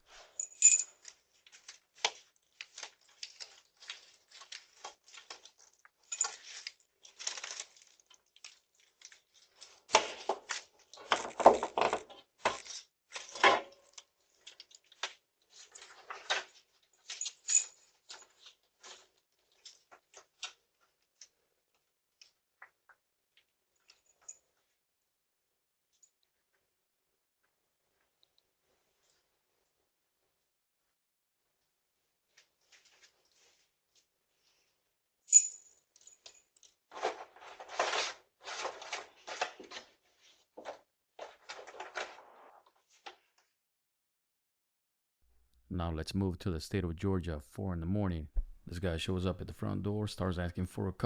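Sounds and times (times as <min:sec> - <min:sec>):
rustling and clinking objects: 0:00.0 - 0:24.8, 0:35.3 - 0:43.4.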